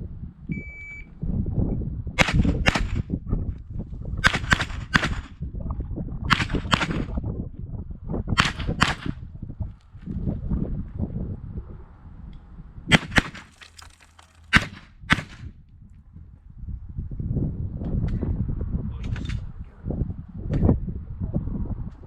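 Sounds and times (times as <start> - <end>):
pistol shots in quick pairs: 2.2 - 3.1, 4.2 - 5.3, 6.3 - 7.1, 8.4 - 9.2, 12.9 - 13.5, 14.5 - 15.5.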